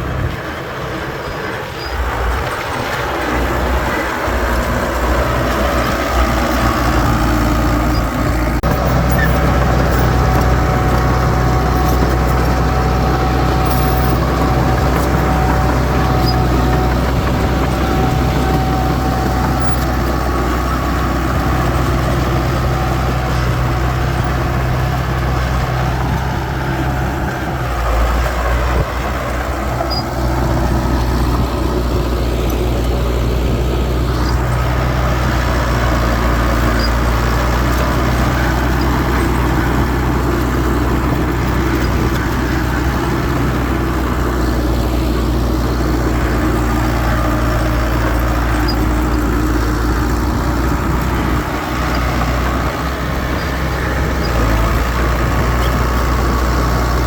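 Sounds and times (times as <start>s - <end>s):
heavy diesel engines running: 0.0s - 57.0s.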